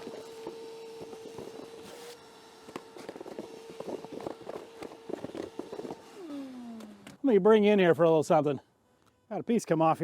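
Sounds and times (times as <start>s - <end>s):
vacuum motor humming: 0.0s - 7.2s.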